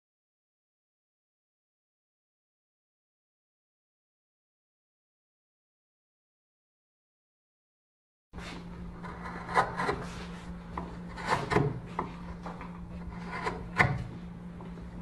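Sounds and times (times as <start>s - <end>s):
steady low hum: 8.4s - 15.0s
tool scraping wood: 8.4s - 15.0s.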